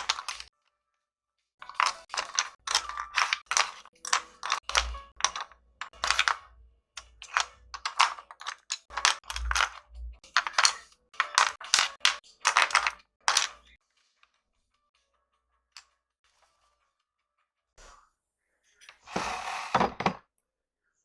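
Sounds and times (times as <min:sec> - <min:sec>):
colored pencils clattering: 0:00.0 - 0:00.5, 0:01.6 - 0:13.7.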